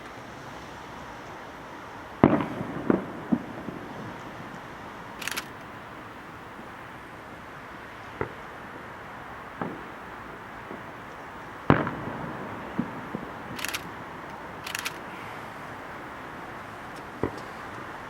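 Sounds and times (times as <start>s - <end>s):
steady background hiss: 0.0s - 18.0s
fireworks booming: 2.2s - 7.1s, 8.1s - 8.6s, 9.4s - 18.0s.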